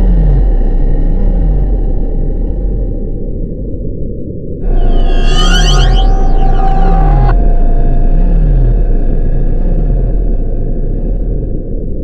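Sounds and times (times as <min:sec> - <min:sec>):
deep rumble: 0:00.0 - 0:12.0
slow wavering tone: 0:04.6 - 0:11.6
steady low hum: 0:04.6 - 0:12.0.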